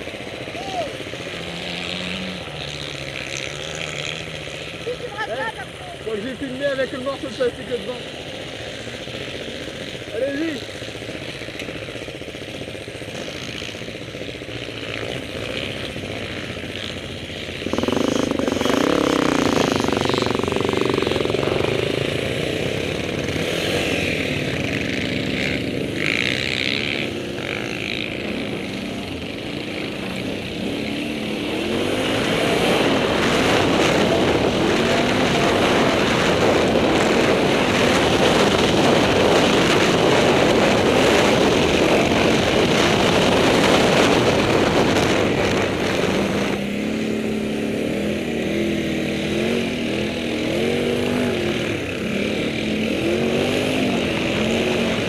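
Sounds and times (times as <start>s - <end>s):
quad bike engine revving: 0.0s - 55.0s
wind rush on microphone: 31.8s - 46.8s.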